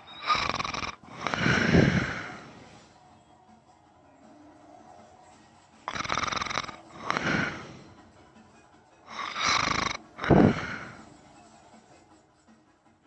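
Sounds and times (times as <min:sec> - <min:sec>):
man snoring: 0:00.0 - 0:02.5, 0:05.9 - 0:07.8, 0:09.1 - 0:11.0.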